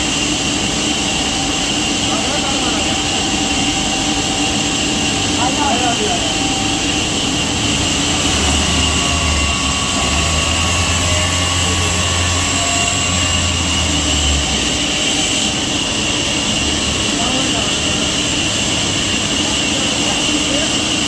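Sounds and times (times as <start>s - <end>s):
sawmill machinery whine: 0.0s - 21.0s.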